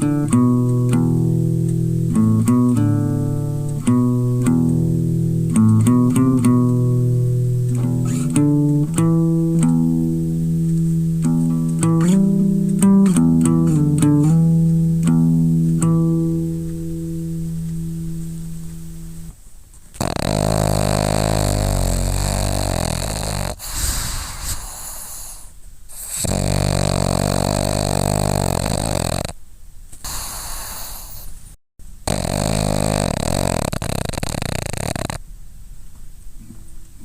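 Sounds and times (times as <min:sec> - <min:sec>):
solo guitar playing: 0:00.0 - 0:19.3.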